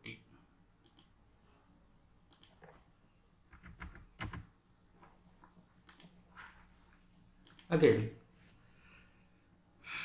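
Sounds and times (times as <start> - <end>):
computer keyboard keystrokes: 3.5 - 4.5.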